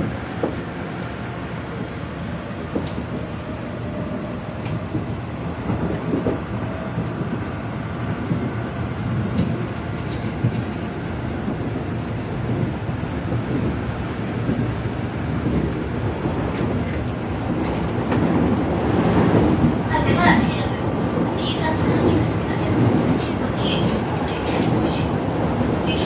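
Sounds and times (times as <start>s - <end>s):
wheels rumbling on rails: 0.0s - 26.0s.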